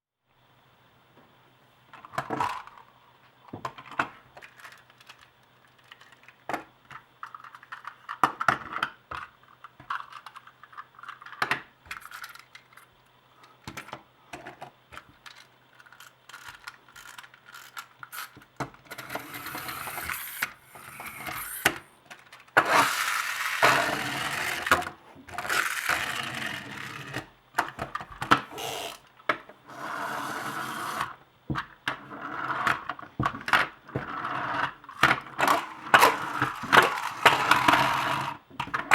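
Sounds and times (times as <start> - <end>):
plastic clicks and clacks: 3.5 - 12.9, 13.5 - 20.6, 21.2 - 29.5
wind-up toy motor whirring: 9.9 - 12.9, 15.2 - 21.8, 22.6 - 27.2, 28.5 - 29.1, 35.0 - 38.4.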